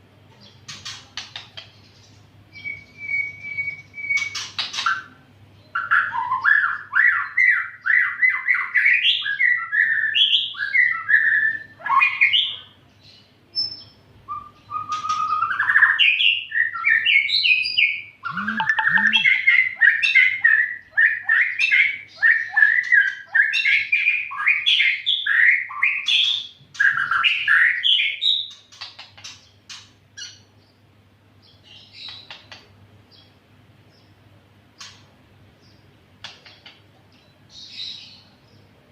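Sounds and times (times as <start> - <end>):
bird singing whistled song: 2.5 - 4.5, 13.6 - 28.6.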